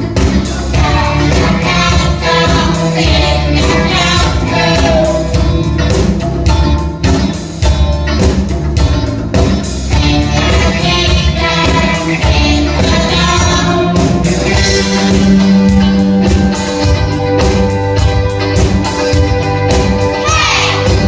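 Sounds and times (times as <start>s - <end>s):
guitar: 0.0s - 21.0s
person singing: 0.2s - 5.6s.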